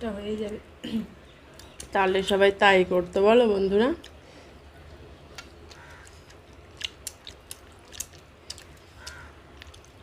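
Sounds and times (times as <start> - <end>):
chewing and biting: 5.3 - 10.0.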